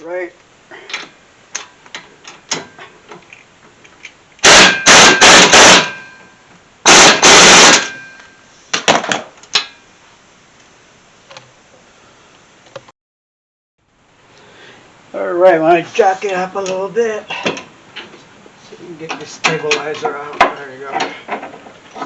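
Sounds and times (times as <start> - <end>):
impact wrench hammering: 4.4 - 6.2, 6.9 - 8.2.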